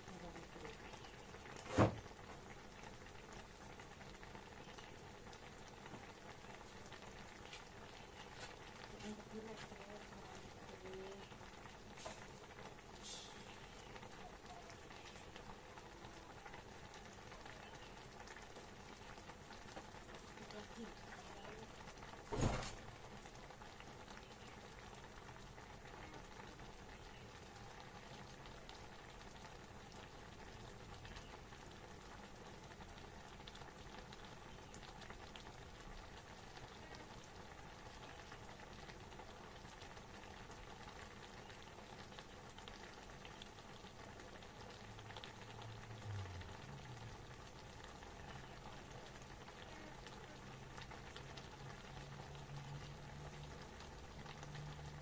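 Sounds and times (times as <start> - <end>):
soup bubbling in a pot: 0.0 - 55.0
low thump: 1.7 - 2.0.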